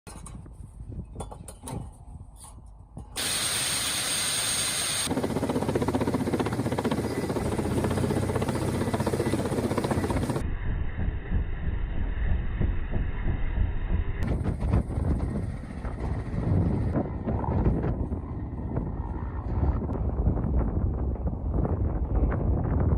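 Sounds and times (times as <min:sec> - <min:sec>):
high steady whine: 0:03.1 - 0:05.2, 0:06.7 - 0:22.9
helicopter turbine and rotor noise: 0:03.1 - 0:22.9.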